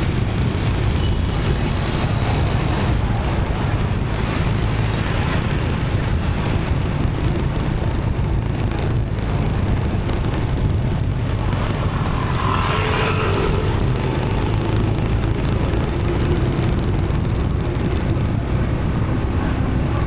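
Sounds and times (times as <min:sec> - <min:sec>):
motorbike engine: 0:00.0 - 0:20.0
passing cars and motorbikes: 0:00.0 - 0:20.0
tyre noise: 0:00.0 - 0:20.0.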